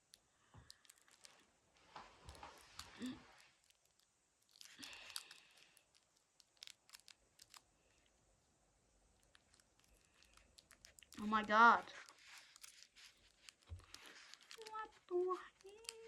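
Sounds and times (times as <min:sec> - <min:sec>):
packaging rustling and tearing: 0:00.0 - 0:01.4, 0:02.1 - 0:07.7, 0:09.2 - 0:16.0
small clicks: 0:12.0 - 0:16.0.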